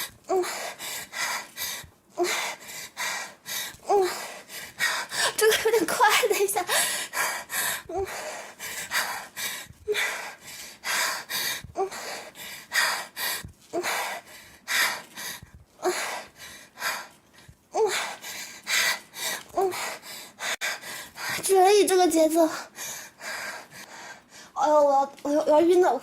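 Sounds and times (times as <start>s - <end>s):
woman gasping breaths: 6.7s - 21.4s.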